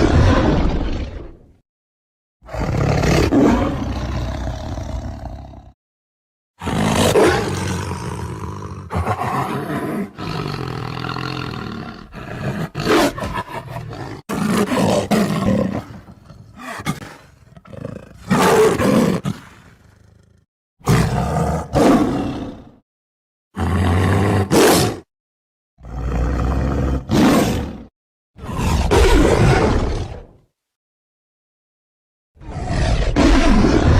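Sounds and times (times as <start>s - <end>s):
tiger roaring and growling: 0.0s - 1.6s, 2.4s - 5.8s, 6.6s - 22.8s, 23.6s - 25.1s, 25.8s - 30.4s, 32.4s - 33.9s.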